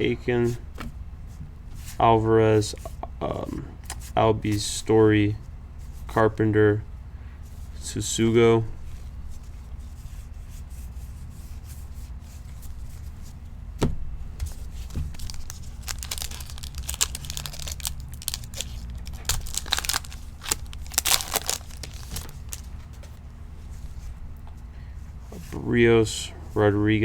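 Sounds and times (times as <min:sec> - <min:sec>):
wrapper crinkling and tearing: 0:14.8 - 0:22.8.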